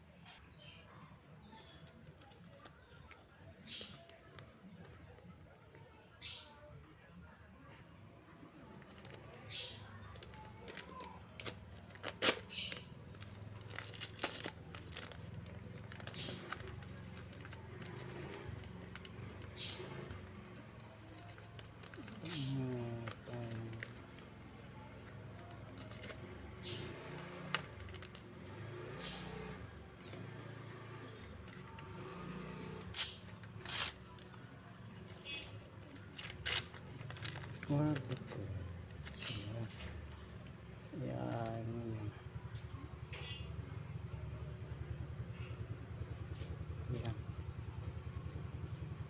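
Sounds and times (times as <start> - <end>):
packaging rustling: 8.7 - 26.4, 27.1 - 28.4, 31.4 - 41.4
plastic packaging clicks: 10.2 - 20.3.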